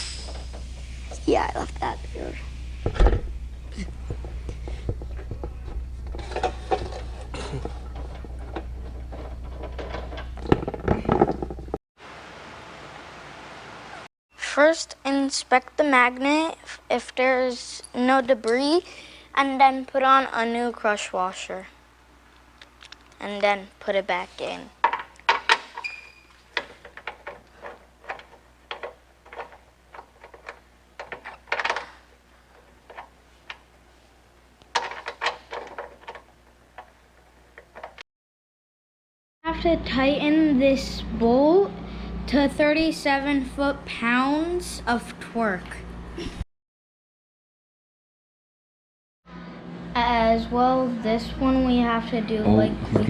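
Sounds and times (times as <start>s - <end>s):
low steady hum: 0.0s - 13.9s.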